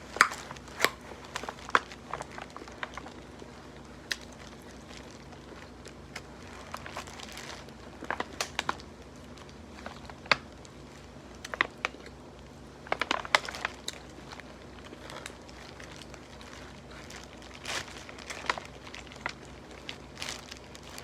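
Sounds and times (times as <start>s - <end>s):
wrappings crinkling: 0.0s - 21.0s.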